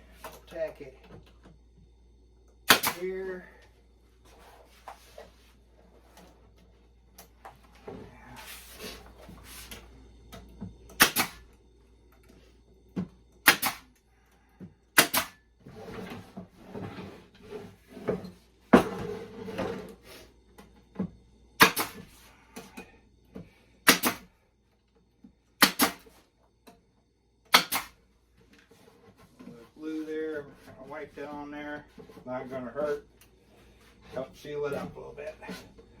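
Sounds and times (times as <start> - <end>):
nails hammered into wood: 2.6 - 3.1, 10.9 - 11.4, 13.4 - 13.9, 15.0 - 15.4, 21.6 - 22.0, 23.8 - 24.3, 25.6 - 26.1, 27.5 - 28.0
wood scraping and shuffling: 15.6 - 20.3, 28.4 - 36.0.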